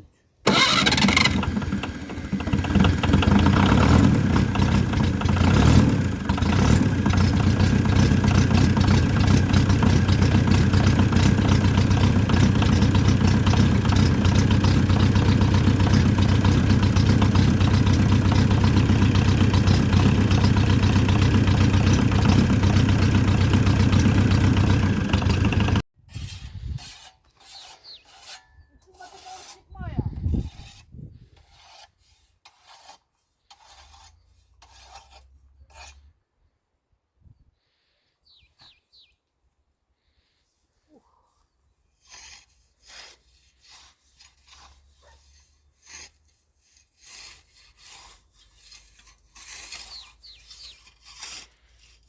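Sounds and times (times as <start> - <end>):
tractor diesel engine idling: 0.5 - 25.8.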